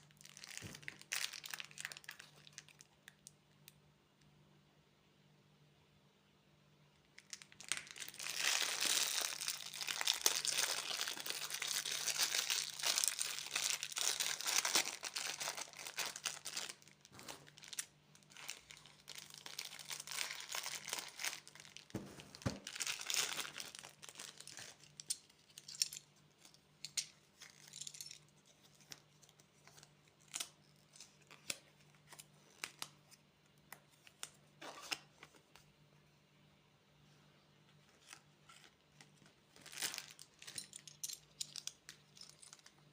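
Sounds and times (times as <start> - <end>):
candy wrapper crinkling and tearing: 0.0 - 3.3, 7.2 - 33.0, 38.0 - 42.9.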